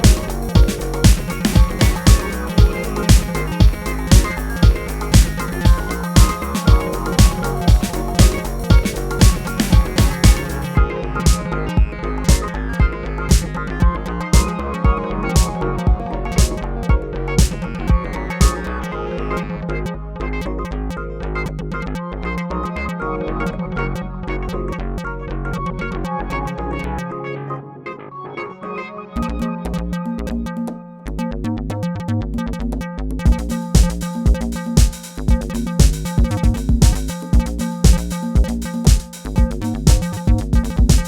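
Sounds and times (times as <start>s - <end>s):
background music with deep drum: 0.0s - 18.9s, 33.3s - 41.0s.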